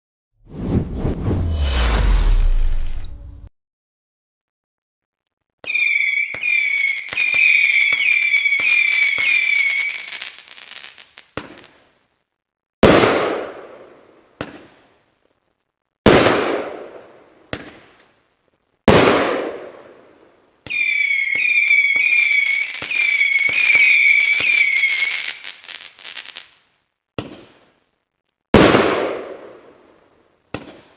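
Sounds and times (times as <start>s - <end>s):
aerial shell breaks: 1.4s - 3.5s
firework whistles with sharp reports: 5.6s - 11.8s, 20.6s - 26.6s
small firework pop: 11.3s - 11.8s, 14.4s - 14.8s, 17.5s - 18.1s, 27.2s - 27.7s, 30.5s - 30.9s.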